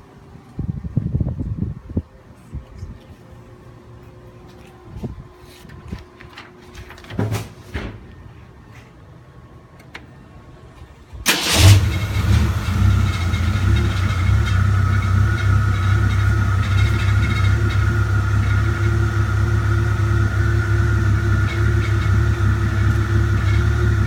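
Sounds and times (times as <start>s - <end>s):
tractor engine starting and running: 10.8s - 24.0s.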